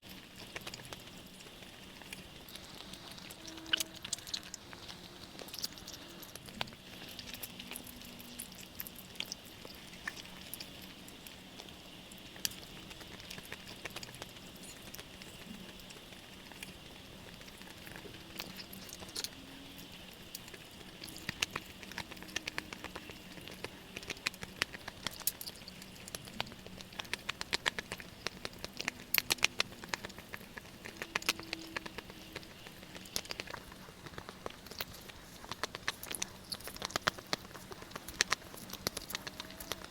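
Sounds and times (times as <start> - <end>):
wet chewing: 0.0 - 39.9
mouth clicks and smacks: 12.0 - 39.9.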